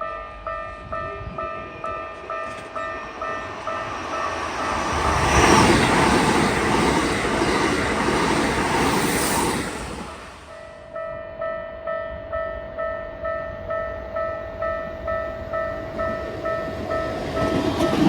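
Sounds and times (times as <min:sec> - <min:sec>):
train rushing past: 0:00.7 - 0:10.7, 0:13.9 - 0:18.0.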